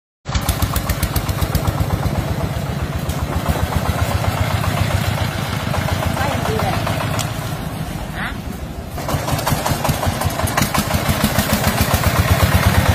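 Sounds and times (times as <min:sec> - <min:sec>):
diesel engine chugging: 0:00.3 - 0:12.9.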